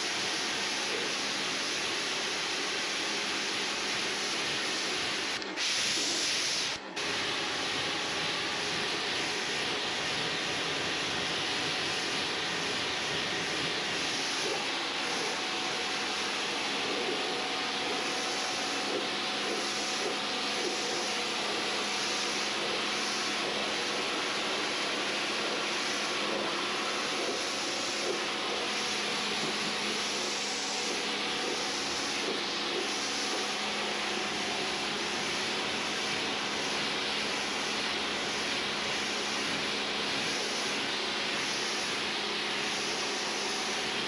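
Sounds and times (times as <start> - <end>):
pressure washer motor hum: 0.0 - 44.0
pressure washer water jet hissing: 0.0 - 44.0.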